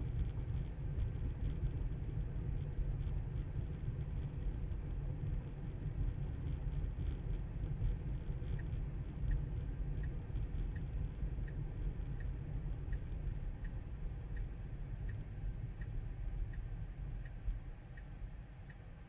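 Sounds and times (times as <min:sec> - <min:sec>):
car road rumble: 0:00.0 - 0:19.0
turn signal ticking: 0:05.4 - 0:19.0.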